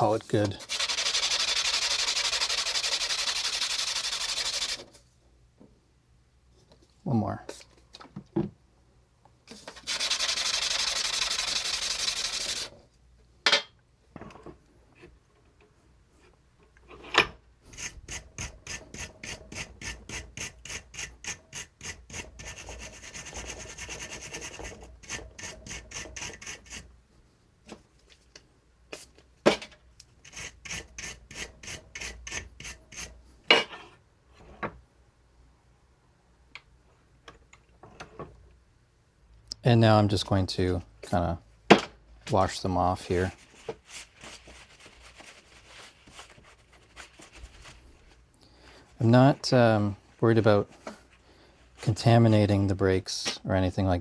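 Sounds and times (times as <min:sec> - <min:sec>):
brake pad scrubbing on sandpaper: 0:00.0 - 0:04.9, 0:09.7 - 0:12.7.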